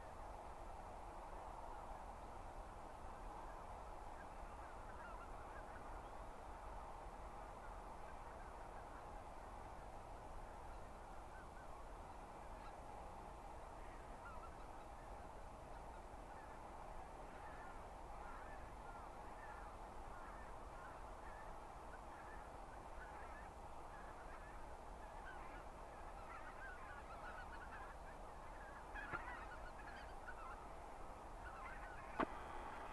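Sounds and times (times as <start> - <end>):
flock of geese honking: 25.2 - 30.7.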